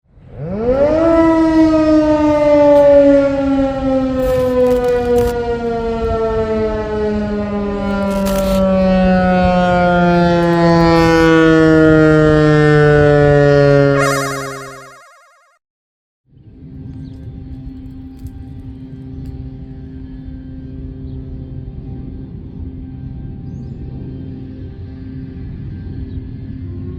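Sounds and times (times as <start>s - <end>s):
outdoor warning siren winding down: 0.2s - 15.6s.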